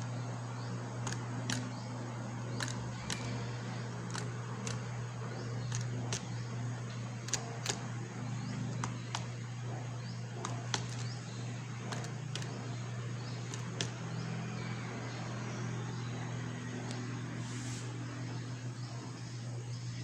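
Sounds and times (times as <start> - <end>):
escapement mechanism ticking: 0.0 - 15.4
steady low hum: 0.0 - 20.0.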